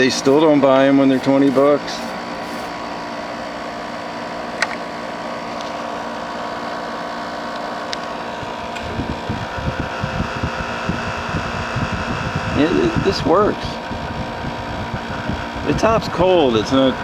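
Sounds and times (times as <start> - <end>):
dehumidifier humming: 0.0 - 17.0.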